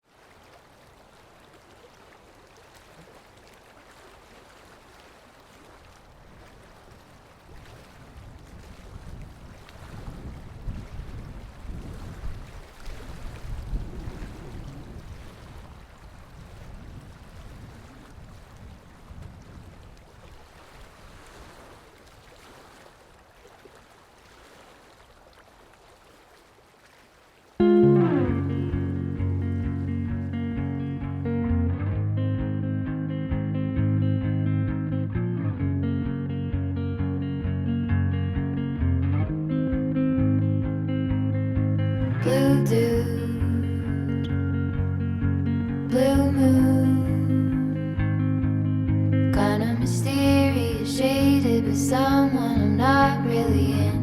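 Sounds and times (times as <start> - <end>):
small waves lapping at shore: 0.0 - 27.7
faint water splashes: 0.0 - 31.6
light wind: 0.0 - 32.0
water washing: 0.3 - 19.4.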